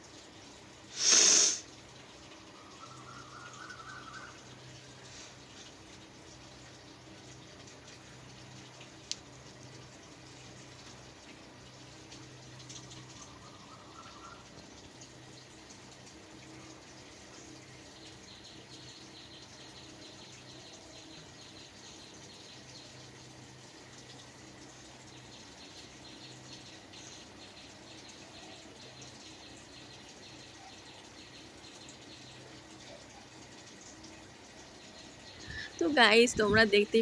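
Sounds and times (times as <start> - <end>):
low background hum: 1.6 - 37.0.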